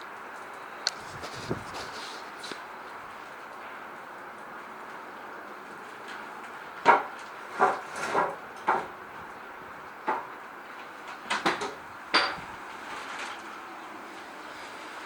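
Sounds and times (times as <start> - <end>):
sharp irregular knocks and clacks: 6.8 - 8.9.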